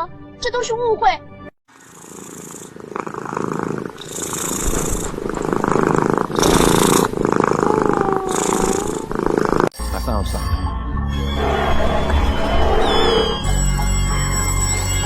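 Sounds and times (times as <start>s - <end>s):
cat purring: 1.7s - 9.8s.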